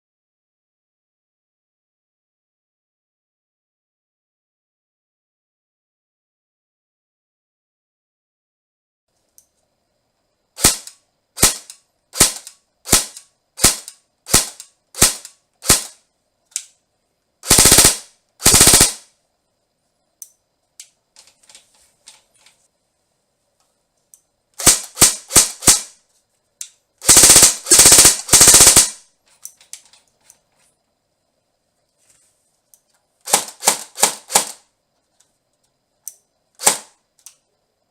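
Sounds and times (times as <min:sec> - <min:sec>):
airsoft gun full-auto bursts: 0:10.6 - 0:16.0, 0:17.4 - 0:19.1, 0:24.6 - 0:26.0, 0:27.0 - 0:29.0, 0:33.2 - 0:34.7, 0:36.6 - 0:36.9
airsoft gun single shots: 0:10.6 - 0:16.0, 0:36.6 - 0:37.0.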